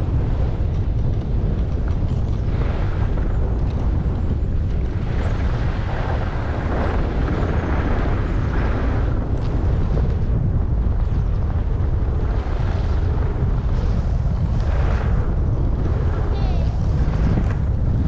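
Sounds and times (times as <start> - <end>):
wind buffeting microphone: 0.0 - 18.0
skis sliding on snow: 4.6 - 10.2, 11.9 - 18.0.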